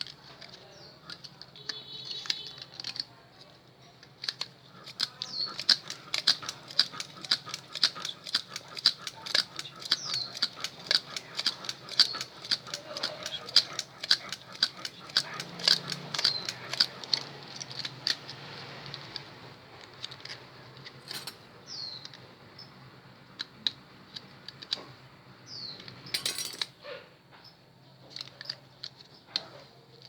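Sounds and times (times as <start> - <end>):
small metallic clicks: 0.0 - 22.3, 25.8 - 26.7.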